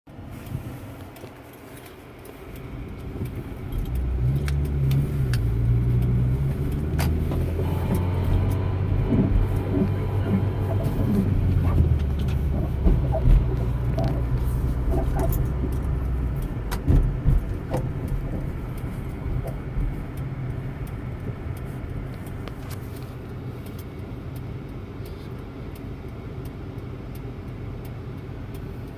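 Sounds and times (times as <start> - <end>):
car low droning noise: 0.1 - 28.9.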